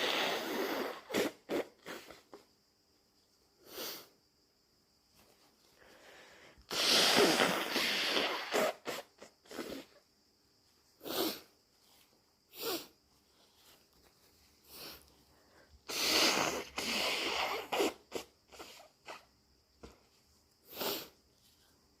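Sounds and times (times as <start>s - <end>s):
person sneezing: 0.0s - 2.4s, 6.7s - 10.0s, 15.9s - 19.2s
person sniffing: 0.0s - 2.4s, 3.6s - 4.2s, 5.8s - 10.0s, 11.0s - 13.8s, 14.6s - 19.3s, 20.6s - 21.2s.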